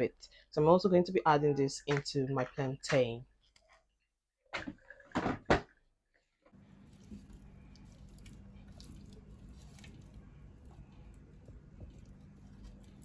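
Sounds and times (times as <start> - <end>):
faint low hum: 6.6 - 13.0.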